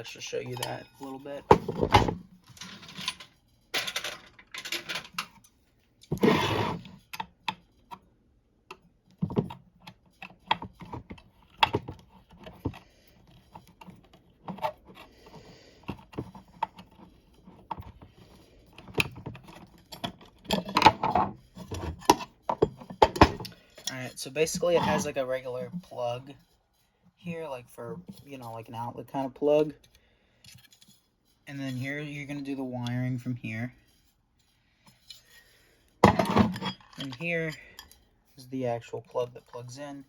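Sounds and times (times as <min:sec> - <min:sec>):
metal scrape: 0:00.0 - 0:01.9, 0:06.1 - 0:07.1, 0:19.6 - 0:26.9.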